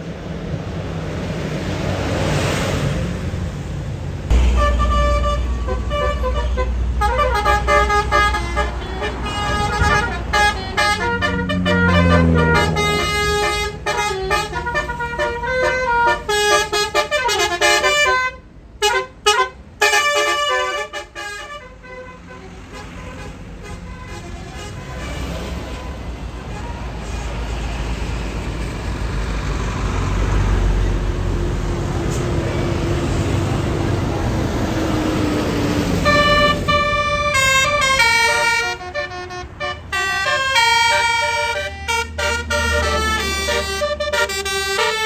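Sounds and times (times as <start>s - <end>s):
bus engine running: 0.0s - 45.0s
musical air horn tune: 4.3s - 22.1s, 36.0s - 45.0s.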